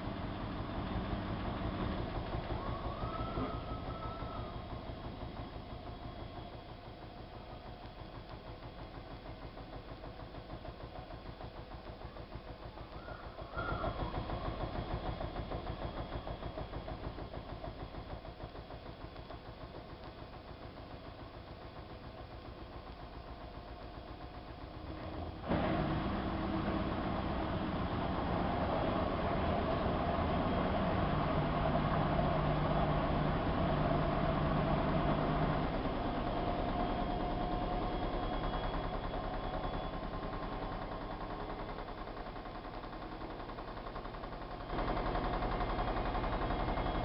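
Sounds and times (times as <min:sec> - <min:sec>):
rising motor whine: 0:01.6 - 0:06.7, 0:25.0 - 0:40.9.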